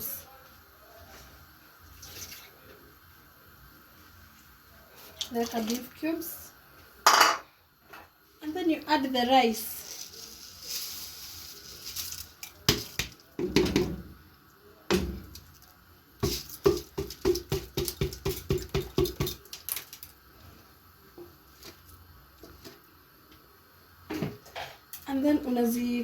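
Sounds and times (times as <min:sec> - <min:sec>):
rice poured into pot: 0:09.5 - 0:13.4
spoon stirring and knocking pot: 0:12.6 - 0:14.0, 0:16.2 - 0:19.5.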